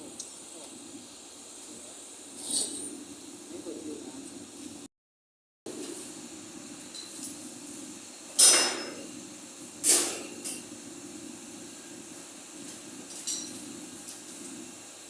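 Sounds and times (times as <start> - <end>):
metallic hissing bursts: 0.0 - 3.3.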